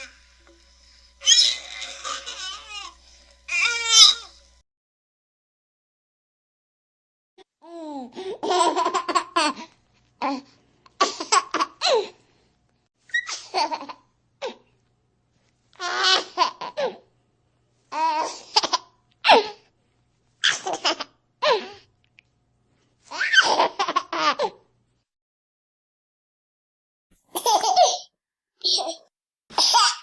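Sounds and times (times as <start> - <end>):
baby laughing: 1.2 - 4.3, 15.8 - 17.0, 20.4 - 21.8, 23.1 - 24.6, 27.3 - 30.0.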